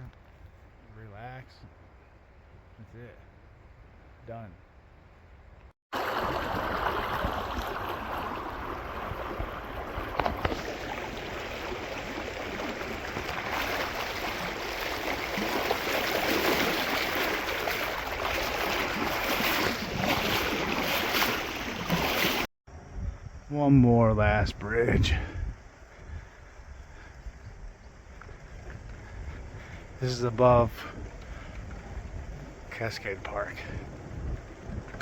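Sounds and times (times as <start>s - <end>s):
river water rushing: 6.0s - 22.5s.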